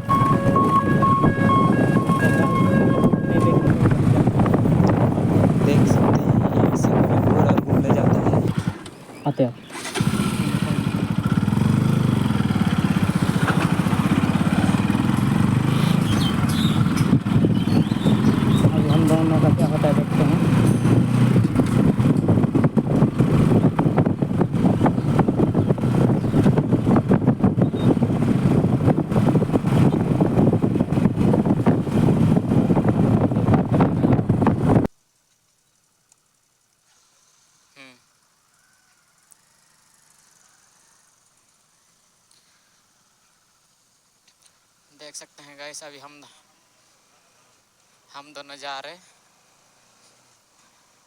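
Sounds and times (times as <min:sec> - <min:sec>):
wind buffeting microphone: 0:00.0 - 0:08.7, 0:12.8 - 0:34.9
motorcycle engine idling: 0:10.0 - 0:27.8.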